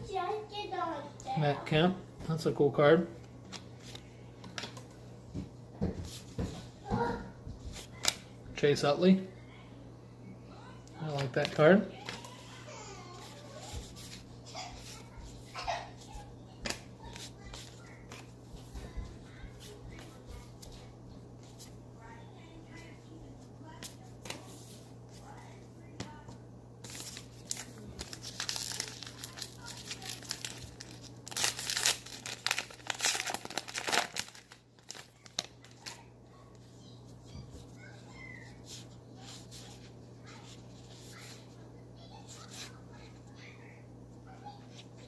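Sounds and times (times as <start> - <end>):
cards being flipped through: 3.2 - 4.9, 7.7 - 8.3, 13.2 - 15.1, 16.6 - 18.8, 26.8 - 36.0.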